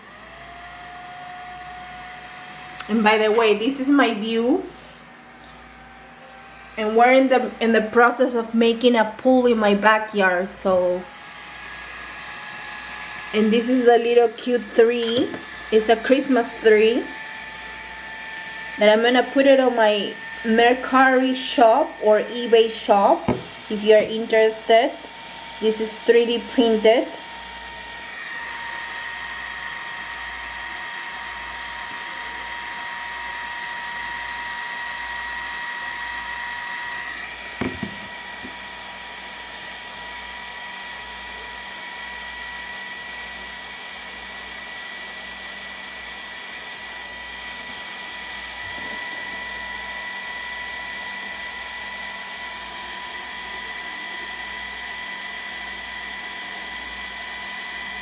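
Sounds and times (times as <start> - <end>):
printer motor whine: 0.0 - 2.9, 11.0 - 23.8, 26.3 - 58.0
brief knock: 37.6 - 38.1.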